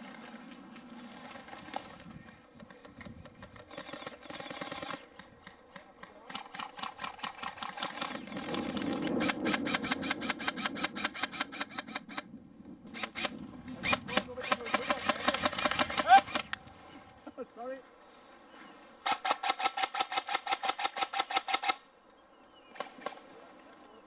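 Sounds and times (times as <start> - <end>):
airsoft gun full auto fire: 3.6 - 5.0, 6.3 - 12.3, 12.9 - 16.5, 19.1 - 21.8.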